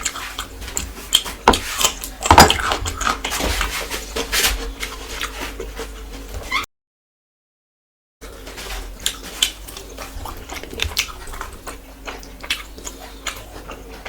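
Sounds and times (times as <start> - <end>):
chewing: 0.0 - 4.2, 4.8 - 6.2, 8.4 - 14.0
food worked on a plate: 0.0 - 6.5, 8.2 - 14.0.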